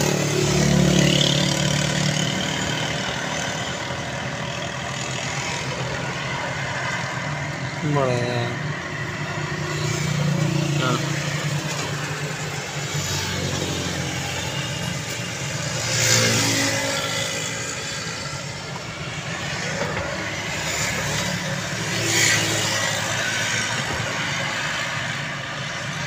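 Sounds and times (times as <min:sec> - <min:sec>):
small engine running: 0:09.5 - 0:25.3.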